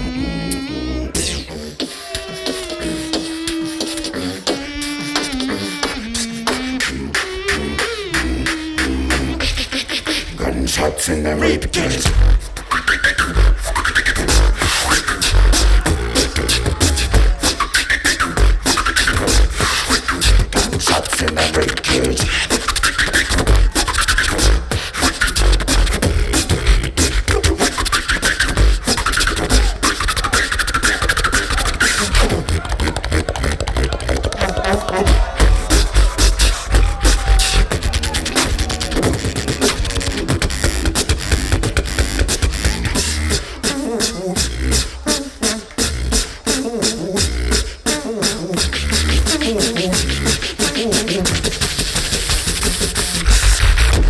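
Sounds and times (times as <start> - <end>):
wavering synth-like vocal line: 0.0 - 40.4, 42.4 - 51.5
beatboxing drum sounds: 0.0 - 54.0.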